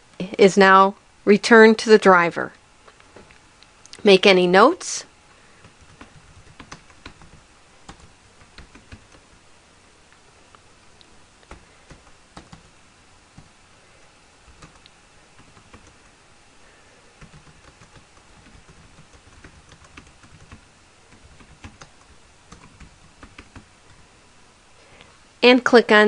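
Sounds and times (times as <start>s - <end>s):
typing on keyboard: 5.7s - 9.3s, 11.4s - 12.8s, 14.5s - 16.0s, 17.2s - 24.0s.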